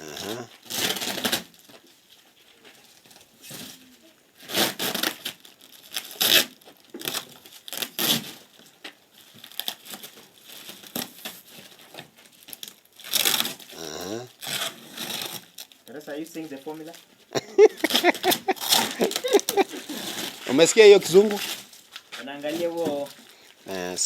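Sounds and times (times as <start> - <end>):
packaging tearing and crinkling: 0.0 - 1.8, 4.4 - 17.0, 17.8 - 23.9.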